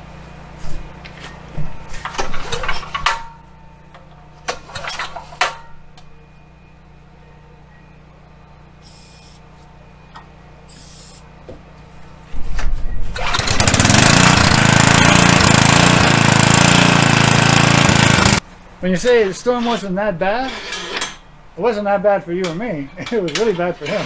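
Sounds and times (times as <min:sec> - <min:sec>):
generator engine running: 0:13.1 - 0:18.4.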